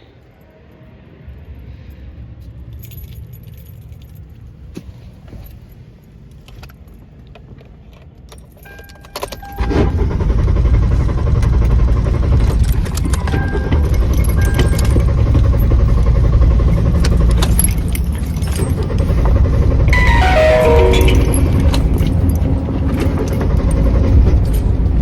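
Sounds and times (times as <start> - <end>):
short beep: 20.0 - 22.2.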